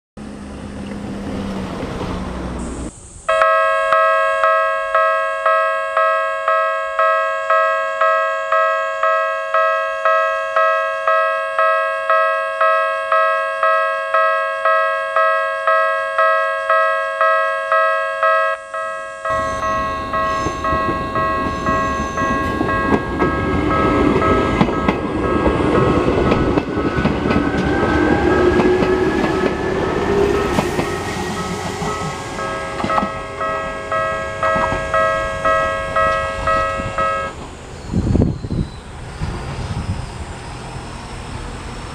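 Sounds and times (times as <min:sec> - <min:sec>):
train whine: 0:00.2 - 0:05.6, 0:18.2 - 0:41.9
electric train passing: 0:00.2 - 0:41.9
level crossing warning bell: 0:02.6 - 0:37.4.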